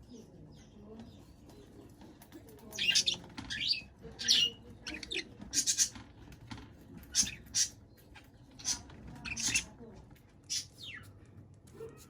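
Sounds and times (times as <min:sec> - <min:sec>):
budgerigars chirping and squawking: 0:02.6 - 0:06.1, 0:07.0 - 0:09.8, 0:10.4 - 0:11.2.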